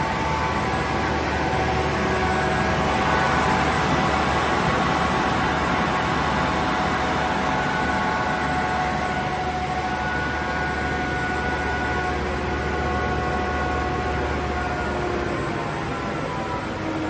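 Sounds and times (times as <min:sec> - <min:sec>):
air compressor whine: 0:00.0 - 0:17.0.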